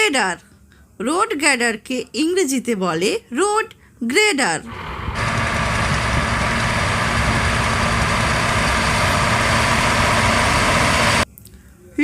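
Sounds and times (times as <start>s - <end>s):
heavy vehicle engine rumbling: 4.7s - 11.2s.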